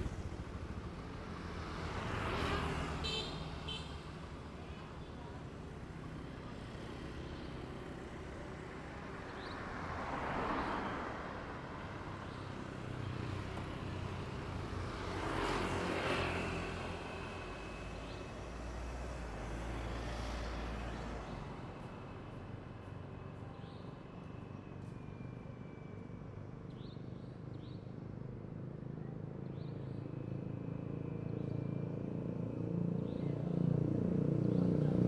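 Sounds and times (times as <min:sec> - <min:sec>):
low engine rumble: 0:00.0 - 0:01.9
vehicles passing by: 0:00.0 - 0:24.8, 0:28.5 - 0:35.0.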